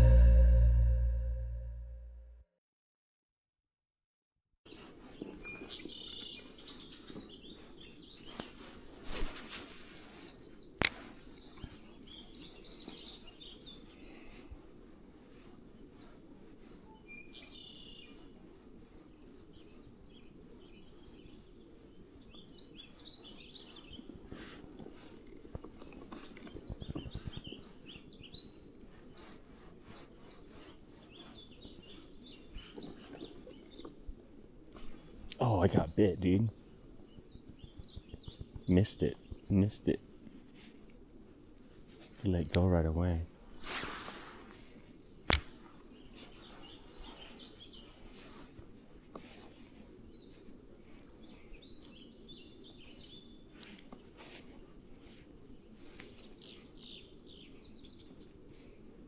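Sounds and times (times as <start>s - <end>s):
soft low knocks: 0.0s - 2.2s
small birds chirping: 4.7s - 9.0s, 9.9s - 43.3s, 44.5s - 59.0s.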